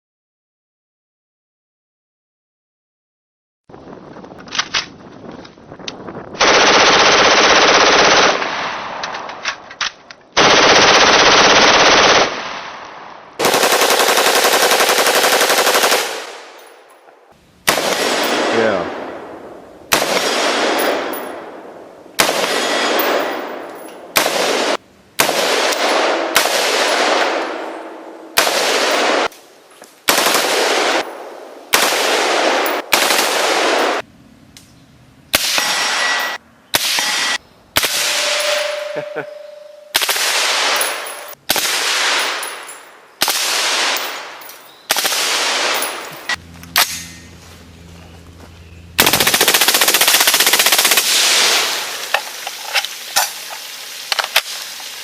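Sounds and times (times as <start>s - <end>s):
rifle firing bursts: 6.4s - 8.6s, 10.4s - 12.6s, 13.4s - 16.6s, 17.6s - 19.2s, 19.9s - 21.1s, 22.2s - 23.3s, 24.1s - 27.6s, 30.1s - 34.0s, 49.0s - 51.8s.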